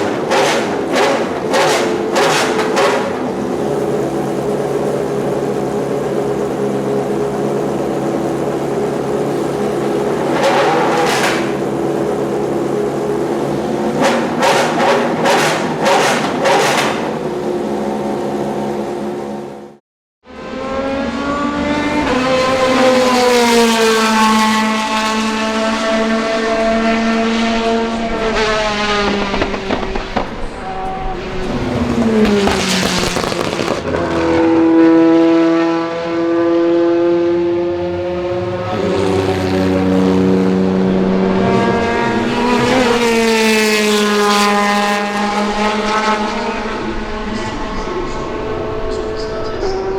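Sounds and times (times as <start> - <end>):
exhaust crackles: 0.0 - 19.5, 22.0 - 36.0
race car engine revving: 0.0 - 49.9.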